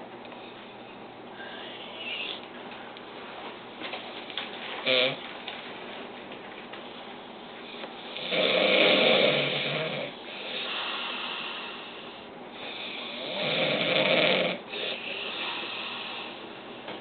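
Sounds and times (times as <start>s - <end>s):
quiet breath: 1.3s - 3.0s, 10.2s - 13.2s
man snoring: 4.8s - 5.2s, 8.1s - 12.0s, 12.6s - 16.4s.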